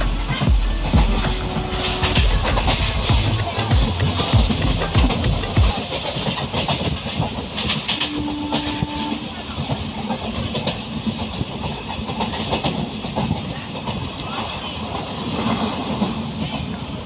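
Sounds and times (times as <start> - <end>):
train rumbling on track: 6.4 - 17.0.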